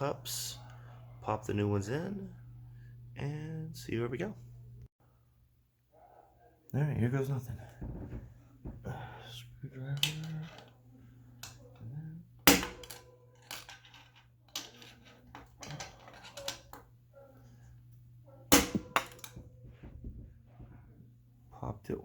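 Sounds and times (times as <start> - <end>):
hammer striking metal: 12.5 - 13.0, 18.5 - 19.4.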